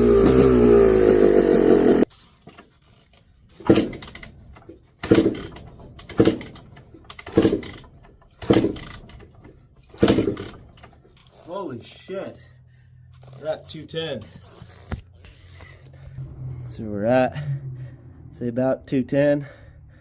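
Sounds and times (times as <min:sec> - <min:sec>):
two-stroke engine running: 0:00.0 - 0:02.1, 0:03.6 - 0:11.1
engine kicked over chuffing: 0:03.6 - 0:11.1.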